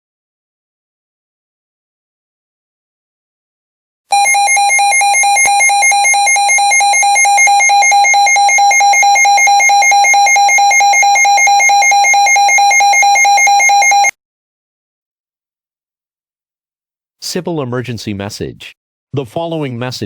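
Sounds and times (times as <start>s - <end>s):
electronic alert tone: 4.1s - 14.1s.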